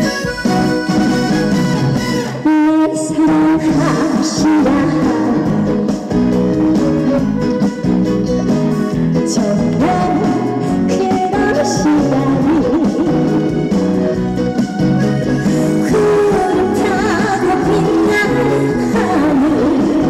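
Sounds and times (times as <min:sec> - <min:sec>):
trot song over loudspeakers: 0:00.0 - 0:20.0
woman singing: 0:02.3 - 0:07.2, 0:09.2 - 0:13.7, 0:15.8 - 0:20.0.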